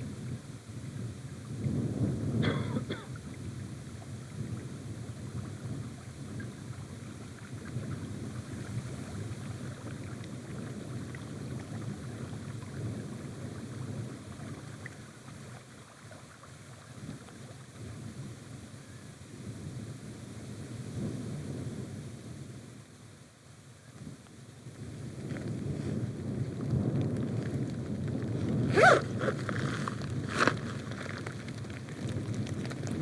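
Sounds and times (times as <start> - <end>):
wind buffeting microphone: 0.0 - 22.8, 23.8 - 33.0.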